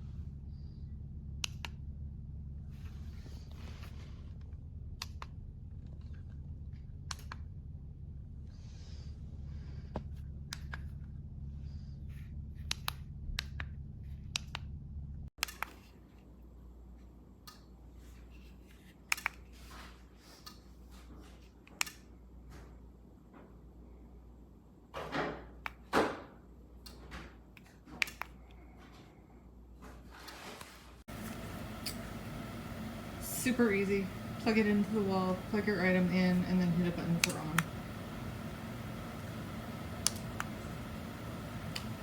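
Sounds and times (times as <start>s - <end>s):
steady low hum: 0.0s - 15.3s, 31.0s - 42.0s
sharp clicks: 36.7s - 40.9s, 41.6s - 42.0s.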